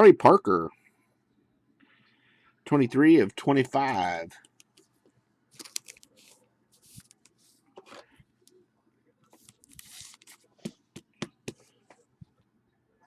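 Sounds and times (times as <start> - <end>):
cards sliding and rustling: 5.6 - 8.1, 9.4 - 10.5.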